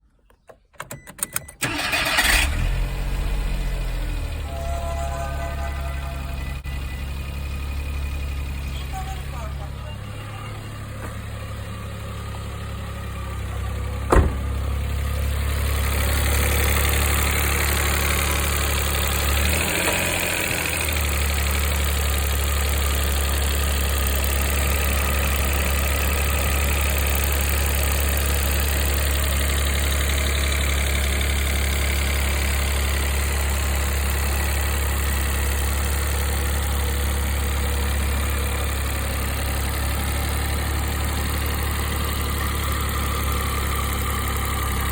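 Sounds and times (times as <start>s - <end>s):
engine whirring: 1.6s - 4.2s, 13.8s - 15.5s
car engine idling with rattle: 6.8s - 44.9s.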